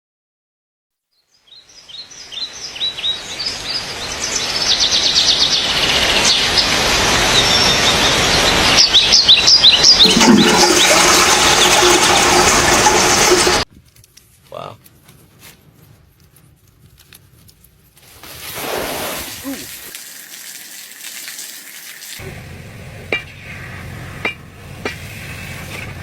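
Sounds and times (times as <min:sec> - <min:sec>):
birds chirping: 0:01.3 - 0:11.9
rushing noise: 0:09.8 - 0:13.6.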